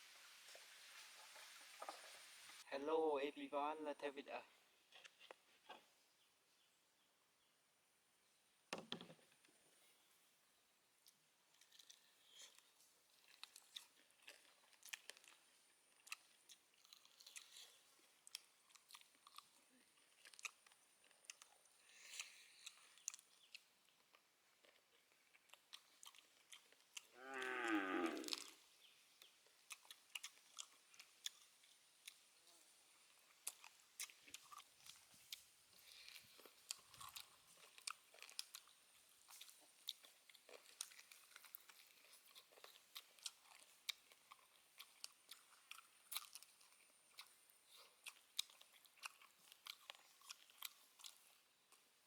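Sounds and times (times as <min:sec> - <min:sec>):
crunching and chewing: 0:04.9 - 0:06.0, 0:10.9 - 0:52.0.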